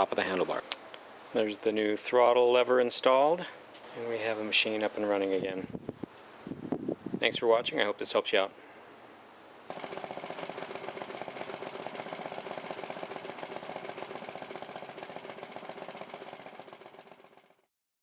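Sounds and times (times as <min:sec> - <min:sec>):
small engine running: 0:09.7 - 0:17.7.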